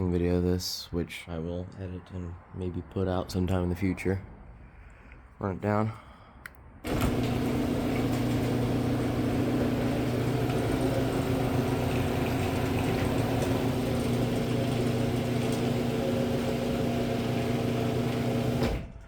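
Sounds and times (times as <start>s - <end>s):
garage door opener motor hum: 6.8s - 19.0s.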